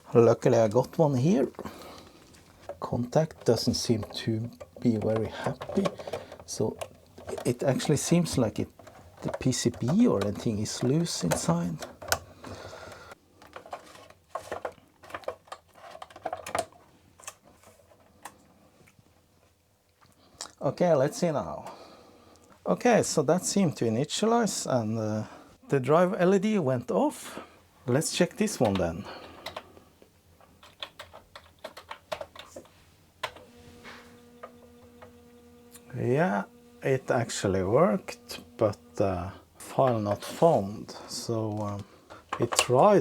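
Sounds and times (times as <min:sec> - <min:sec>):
clicks of handling equipment: 0:01.5 - 0:19.0, 0:28.5 - 0:36.0, 0:41.5 - 0:43.0
steady hum: 0:32.2 - 0:43.0.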